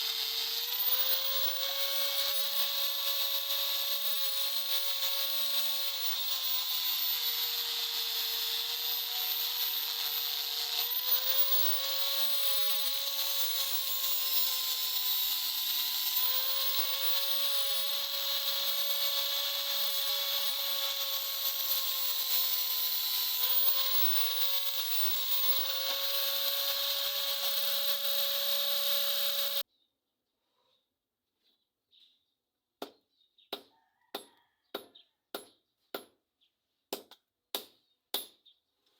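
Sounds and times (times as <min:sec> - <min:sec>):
electric grinder on steel: 0:00.0 - 0:29.6.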